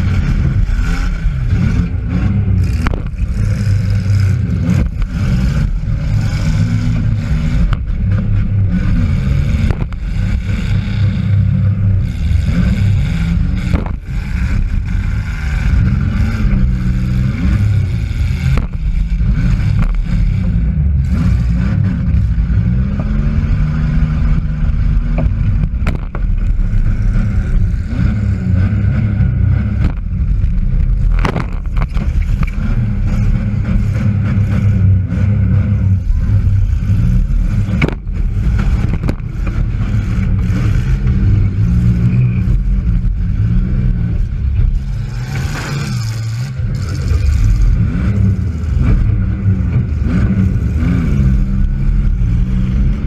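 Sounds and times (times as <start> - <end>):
car engine revving: 0.0 - 53.0.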